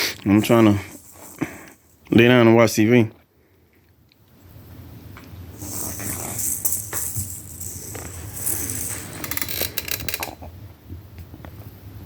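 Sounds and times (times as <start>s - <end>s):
jingling rattling toy ball: 0.3s - 2.1s, 5.6s - 10.3s.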